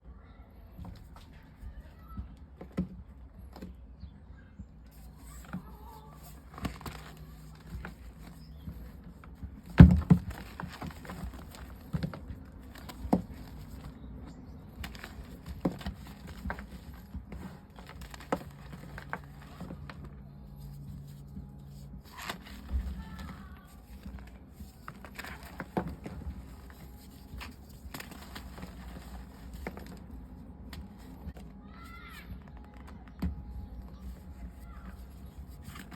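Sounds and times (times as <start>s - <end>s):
chalk crunching and squeaking: 4.8s - 9.4s, 33.5s - 35.9s.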